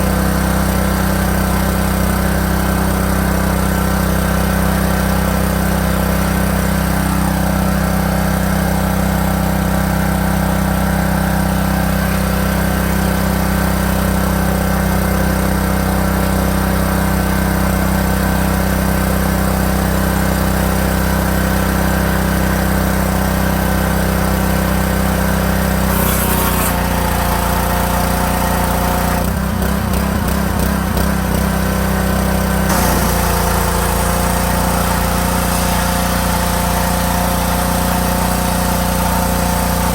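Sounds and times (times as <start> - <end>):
pressure washer engine running: 0.0 - 39.9
rush of spray noise: 25.8 - 27.5, 32.7 - 39.9.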